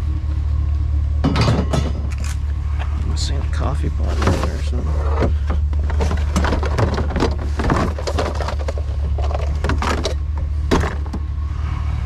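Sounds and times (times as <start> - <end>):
steady low hum: 0.0 - 12.0
scrap knocking and clattering: 1.2 - 2.2, 4.0 - 11.2.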